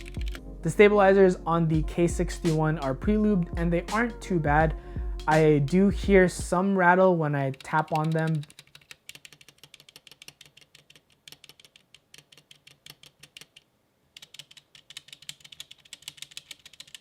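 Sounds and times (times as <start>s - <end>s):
mechanical keyboard key clacks: 7.5s - 13.6s, 14.2s - 17.0s.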